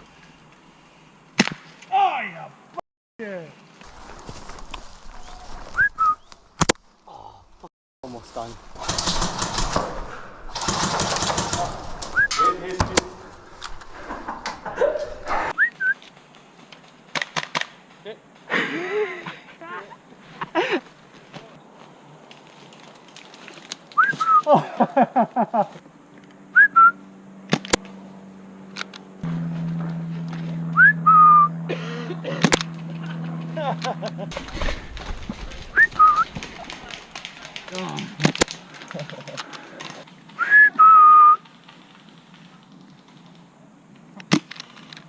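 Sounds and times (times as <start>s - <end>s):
person whistling: 5.8s - 6.3s, 15.6s - 16.0s, 24.0s - 24.5s, 26.6s - 27.0s, 30.8s - 31.5s, 35.8s - 36.2s, 40.4s - 41.4s.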